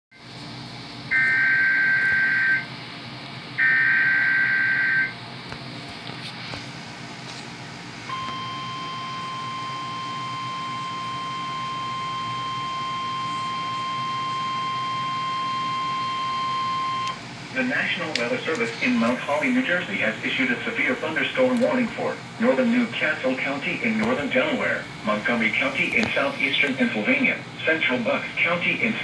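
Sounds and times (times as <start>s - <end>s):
steady attention tone: 8.1s - 29.0s.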